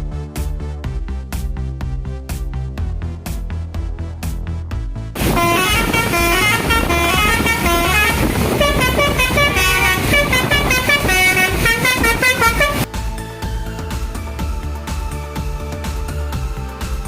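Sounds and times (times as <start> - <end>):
multi-tone bus horn melody: 5.2 - 12.9.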